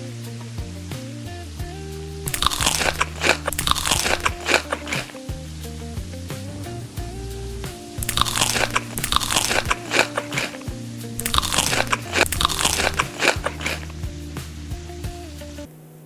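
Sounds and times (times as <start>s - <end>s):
chewing crunchy food: 2.3s - 5.2s, 8.0s - 13.9s.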